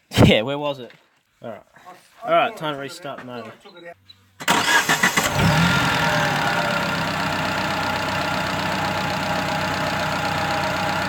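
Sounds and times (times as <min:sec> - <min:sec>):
car engine idling and spluttering: 0:04.7 - 0:11.0.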